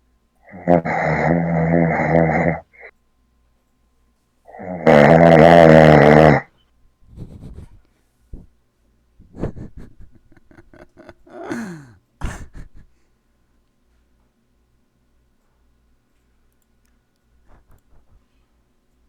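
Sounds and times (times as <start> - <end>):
man snoring: 0.5 - 2.9, 4.5 - 6.5, 10.5 - 12.6
quiet breathing: 10.5 - 13.2, 17.4 - 18.7.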